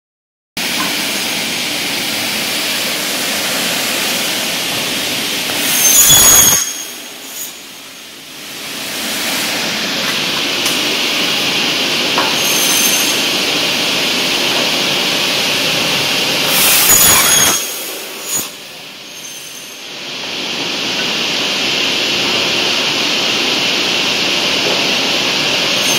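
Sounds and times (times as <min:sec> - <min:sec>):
cutting saw whirring: 0:02.6 - 0:07.8, 0:09.1 - 0:19.9, 0:25.5 - 0:25.9
saw screeching through metal: 0:05.5 - 0:07.7, 0:12.2 - 0:13.4, 0:16.5 - 0:19.9.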